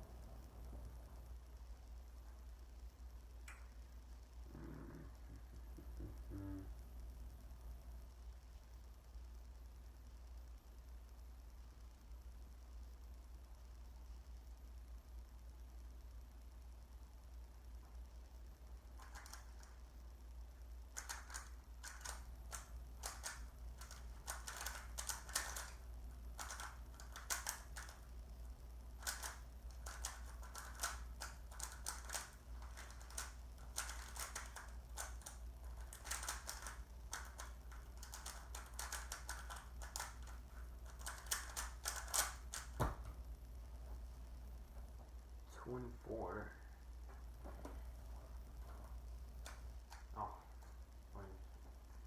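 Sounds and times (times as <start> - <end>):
puzzle cube clacking turns: 19.0 - 19.8, 20.9 - 28.3, 28.9 - 42.8.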